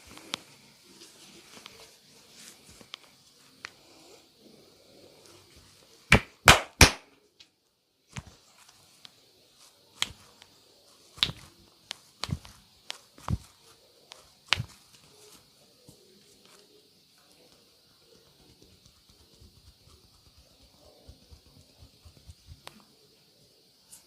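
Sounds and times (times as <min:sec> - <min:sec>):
hands slapping body: 0:06.1 - 0:07.1, 0:11.2 - 0:11.5, 0:12.2 - 0:13.4, 0:14.5 - 0:14.8.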